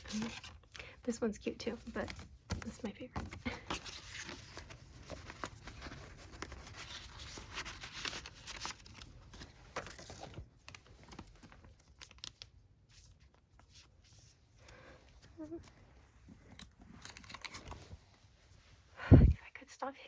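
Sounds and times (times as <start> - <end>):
packaging rustling and crinkling: 1.9 - 14.0, 14.6 - 18.2.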